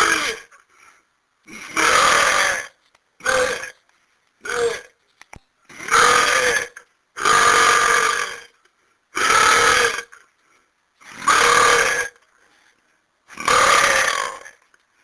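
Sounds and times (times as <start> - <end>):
person belching loudly: 0.0 - 0.5, 1.5 - 3.8, 4.4 - 4.9, 5.7 - 8.5, 13.4 - 14.6.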